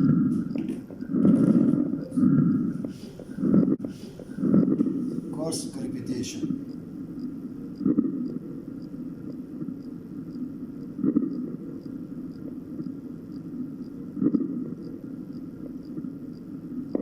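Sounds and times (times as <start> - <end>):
soft breath sounds: 0.0 - 5.4.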